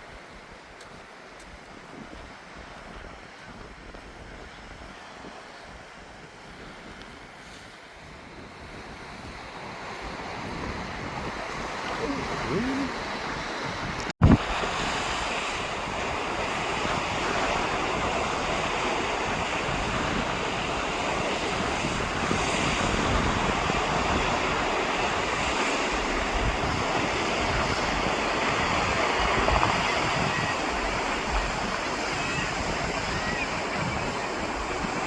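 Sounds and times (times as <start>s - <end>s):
surf washing: 0.0s - 35.0s
wind on microphone: 0.0s - 35.0s.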